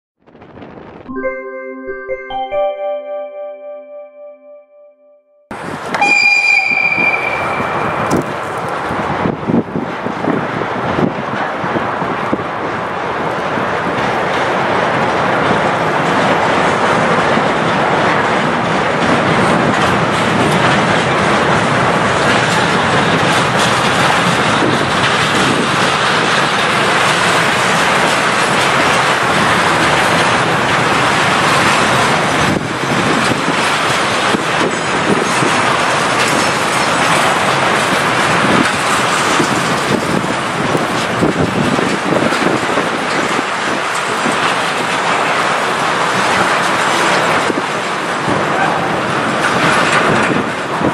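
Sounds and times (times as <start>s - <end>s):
train wheels clattering on rails: 5.7s - 50.9s
train wheels squealing: 6.0s - 8.1s.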